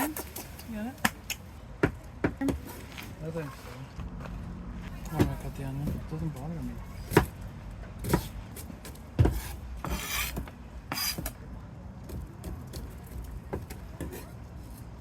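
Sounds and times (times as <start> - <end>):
knife scraping across board: 9.2 - 11.4.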